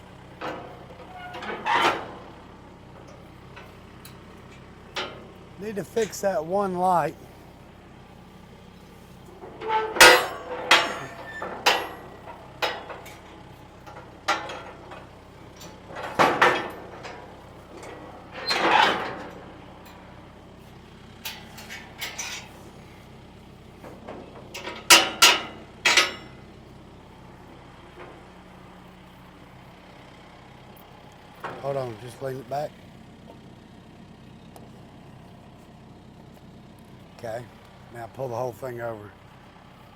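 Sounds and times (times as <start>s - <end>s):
metal trailer ramps clanking: 0.0s - 33.2s
vehicle engine idling: 0.0s - 39.9s
metal scraping: 0.4s - 2.4s, 8.9s - 19.6s.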